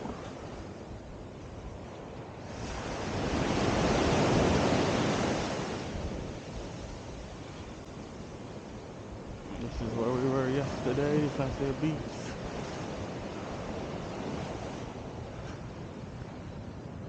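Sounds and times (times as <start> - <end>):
ocean wave breaking: 2.4 - 16.8.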